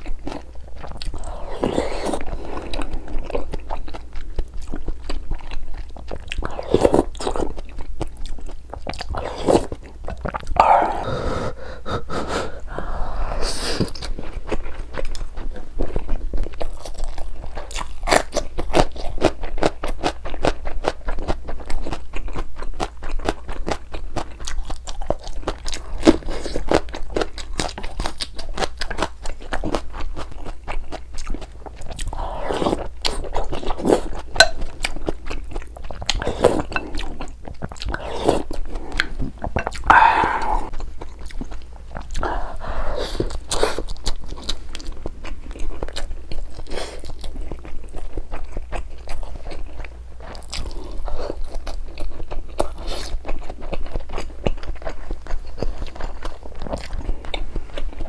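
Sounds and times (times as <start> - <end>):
chewing and biting food: 0.0 - 58.0
breathing: 10.6 - 14.0, 39.9 - 40.7, 42.2 - 43.3.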